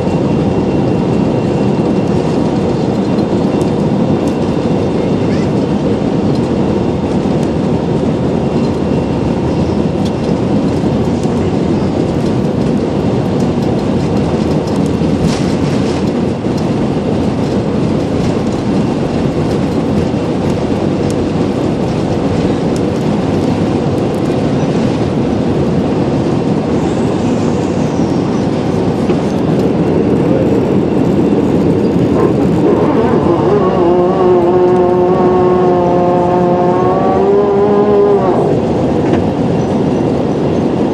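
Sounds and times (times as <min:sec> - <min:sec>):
airliner cabin engine rumble: 0:00.0 - 0:40.9
rising whine: 0:13.4 - 0:40.8.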